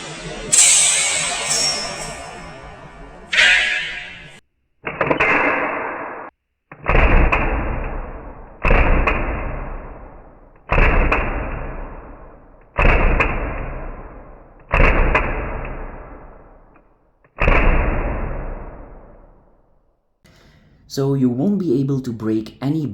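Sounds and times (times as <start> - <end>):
airsoft pistol shots: 4.9 - 16.7, 17.4 - 19.2.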